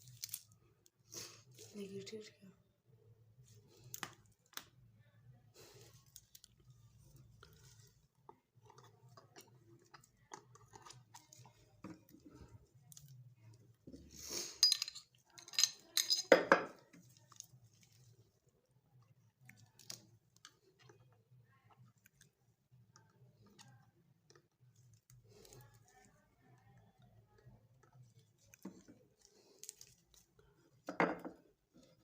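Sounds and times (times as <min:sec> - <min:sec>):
pistol parts clicking and clinking: 0:14.6 - 0:16.7.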